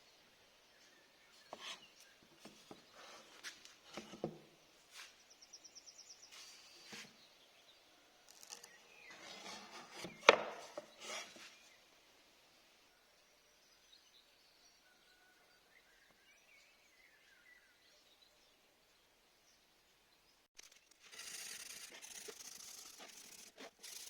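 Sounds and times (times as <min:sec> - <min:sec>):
wooden parts knocking and scraping: 0:02.4 - 0:04.5, 0:08.3 - 0:11.4.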